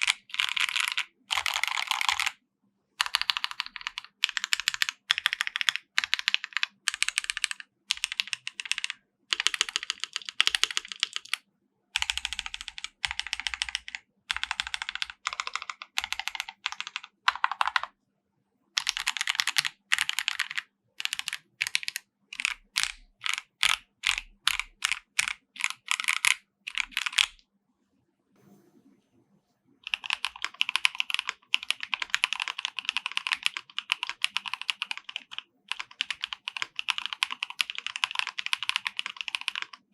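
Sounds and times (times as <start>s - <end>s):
mechanical keyboard typing: 0.0s - 2.4s, 3.0s - 11.4s, 12.0s - 17.9s, 18.8s - 27.4s, 29.8s - 39.9s.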